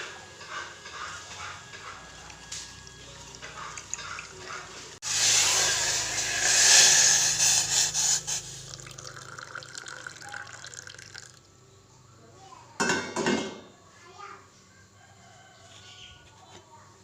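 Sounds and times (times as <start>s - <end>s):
water pouring: 2.2s - 11.5s.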